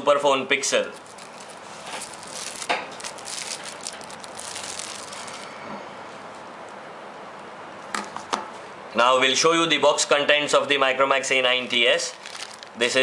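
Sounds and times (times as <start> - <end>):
packaging rustling and crackling: 0.8 - 5.5, 11.6 - 13.0.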